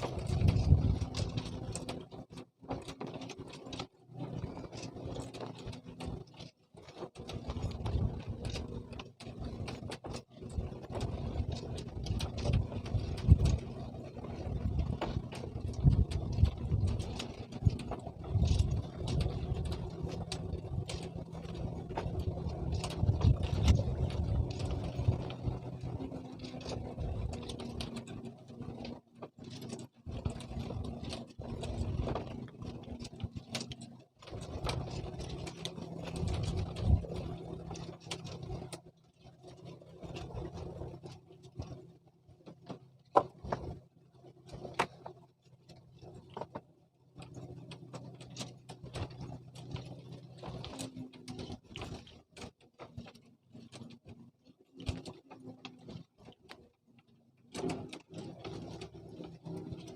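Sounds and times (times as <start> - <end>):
low motor hum: 0.0 - 59.9.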